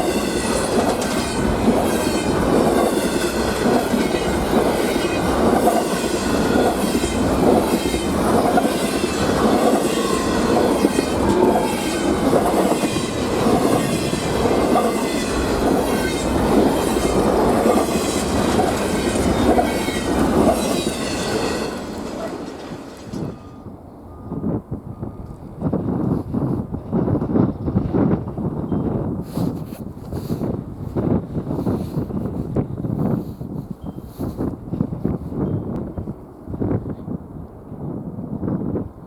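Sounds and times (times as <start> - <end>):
train wheels clacking over rail joints: 0.0 - 23.6.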